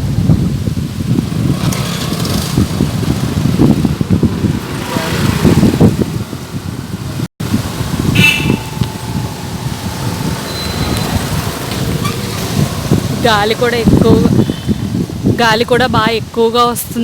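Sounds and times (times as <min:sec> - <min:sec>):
wind buffeting microphone: 0:00.0 - 0:17.0
high-pitched tone: 0:08.1 - 0:12.2.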